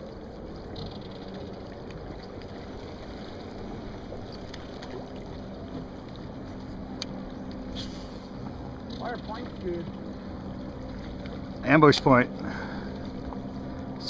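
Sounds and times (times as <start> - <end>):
low hum: 0.0 - 14.0
water and wind hiss: 0.0 - 14.0
faint ticks: 0.3 - 2.6, 3.2 - 7.6.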